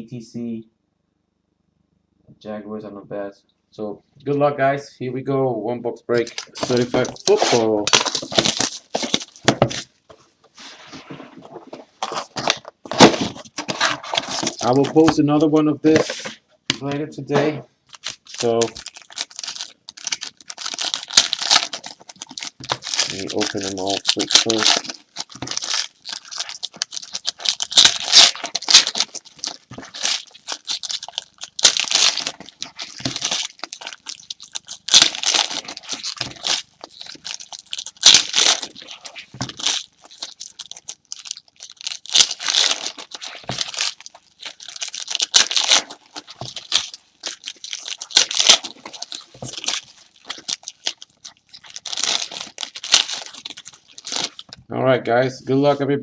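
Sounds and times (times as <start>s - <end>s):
wrappers tearing and crinkling: 6.2s - 9.9s, 11.5s - 15.5s, 17.9s - 54.6s.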